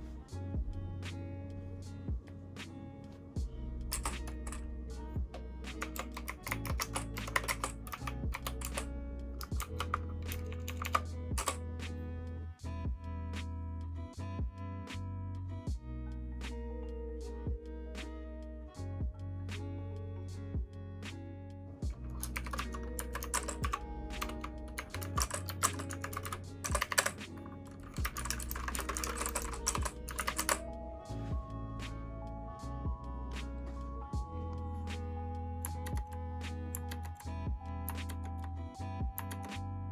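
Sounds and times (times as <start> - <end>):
lofi background music: 0.0 - 39.9
mechanical keyboard typing: 3.9 - 4.7, 5.8 - 11.6, 22.0 - 30.7, 35.6 - 37.2, 39.2 - 39.5.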